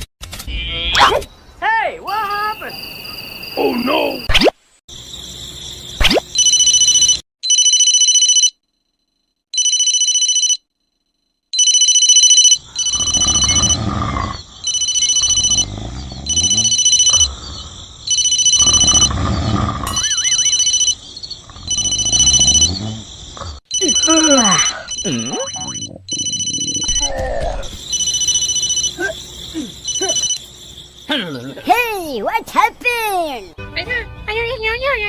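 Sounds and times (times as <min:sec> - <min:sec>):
pulsing electronic ringing tone: 0:11.6 - 0:13.8, 0:14.6 - 0:15.6, 0:18.1 - 0:19.1, 0:19.9 - 0:21.0, 0:21.7 - 0:22.8, 0:23.7 - 0:27.2, 0:27.9 - 0:28.9
loud growling roar: 0:12.9 - 0:14.5, 0:15.2 - 0:17.9, 0:18.6 - 0:20.0, 0:21.4 - 0:23.6.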